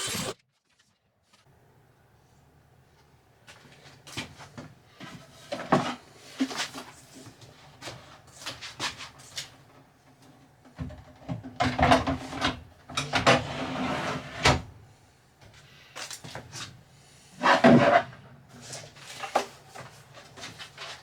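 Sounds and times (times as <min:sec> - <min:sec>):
buzzing and rattling: 0:00.0 - 0:00.4
wooden cabinets knocking and clattering: 0:10.7 - 0:14.7.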